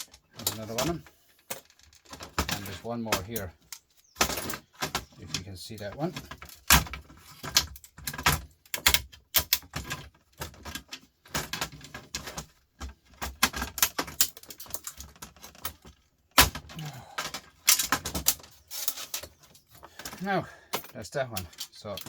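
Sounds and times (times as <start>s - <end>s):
hand tool clicking on metal screws: 13.2s - 22.0s.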